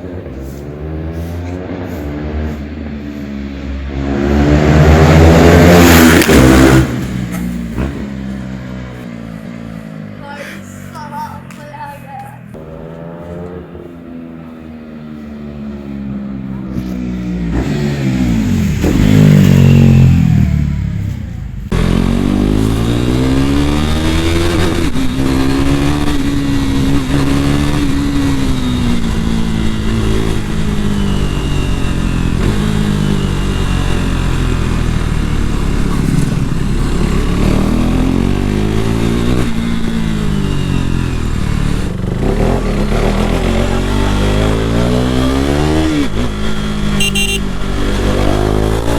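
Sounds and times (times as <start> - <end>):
motorcycle engine revving: 0.0 - 10.3, 12.5 - 48.9.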